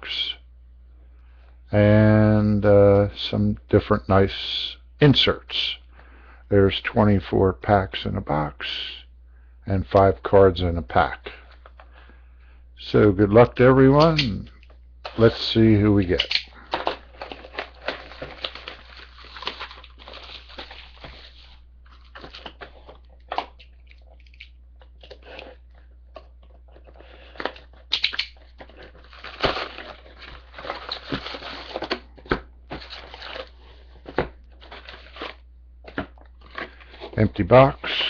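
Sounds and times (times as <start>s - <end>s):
steady low hum: 0.0s - 38.0s
wrappers crinkling and rustling: 16.6s - 24.3s, 26.4s - 37.3s.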